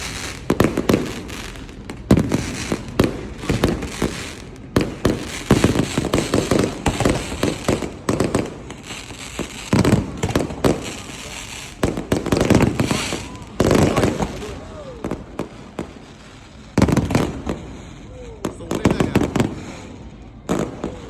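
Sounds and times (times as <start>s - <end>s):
fireworks shells bursting: 0.0s - 14.6s
fireworks crackling: 0.0s - 21.0s.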